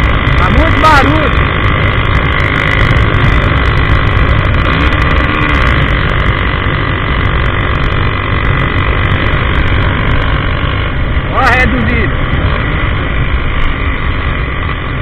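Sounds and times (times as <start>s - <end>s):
motorcycle engine running loud: 0.0s - 15.0s.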